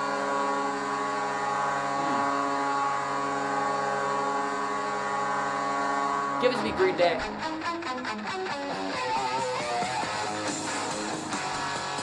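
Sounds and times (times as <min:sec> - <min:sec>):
deep goal horn blast: 0:00.0 - 0:07.4.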